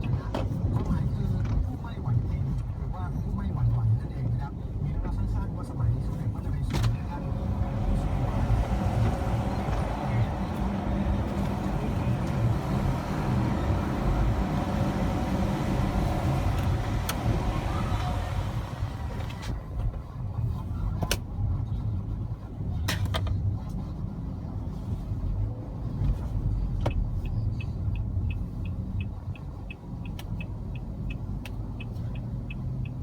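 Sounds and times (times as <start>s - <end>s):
road and engine rumble: 0.0s - 33.0s.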